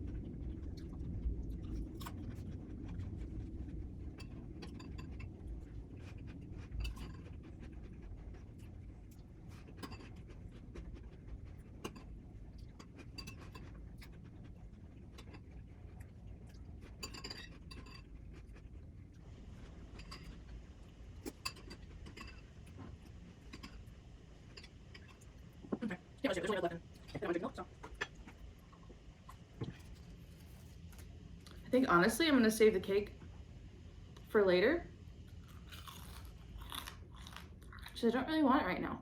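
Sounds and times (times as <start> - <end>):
low rumble: 0.0 - 17.0
crunchy chewing: 0.0 - 25.7, 27.7 - 31.6, 35.3 - 38.0.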